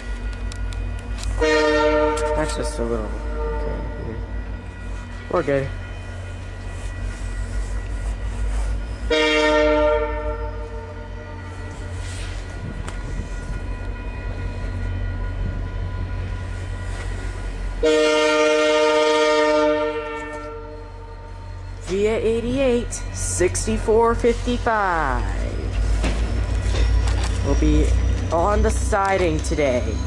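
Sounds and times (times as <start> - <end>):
train rumbling: 0.0 - 30.0
locomotive air horn: 1.2 - 2.6, 3.3 - 4.0, 9.1 - 12.3, 17.8 - 21.0.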